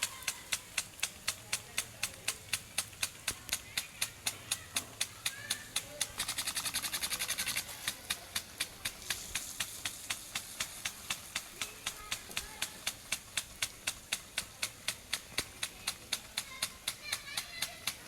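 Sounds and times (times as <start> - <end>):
regular sharp clicking: 0.0 - 18.0.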